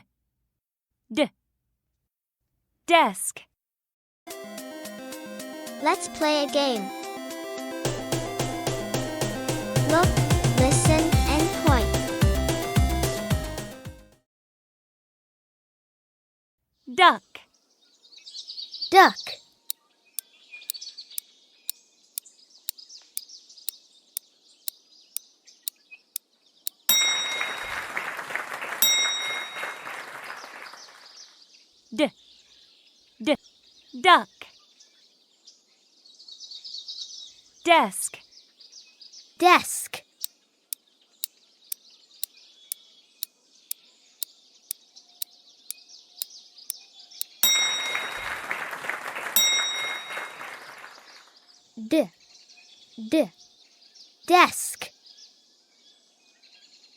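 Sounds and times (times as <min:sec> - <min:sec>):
timer ticking: 0:07.9 - 0:12.0, 0:26.7 - 0:26.9
faint birdsong: 0:17.0 - 0:27.4, 0:30.2 - 0:48.8, 0:49.8 - 0:56.9
bright chime: 0:26.9 - 0:27.7, 0:47.4 - 0:48.2, 0:49.4 - 0:50.4
applause and cheering: 0:27.1 - 0:31.2, 0:47.7 - 0:51.4.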